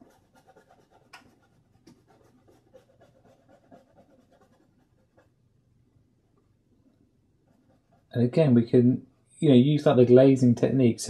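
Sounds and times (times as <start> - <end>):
paintbrush scratching on canvas: 0.0 - 5.4, 7.4 - 8.3.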